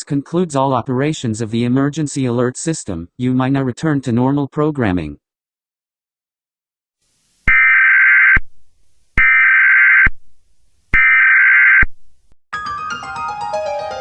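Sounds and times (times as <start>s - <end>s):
warbling two-tone data bursts: 7.5s - 8.5s, 9.2s - 10.2s, 10.9s - 11.9s
music: 12.6s - 14.0s.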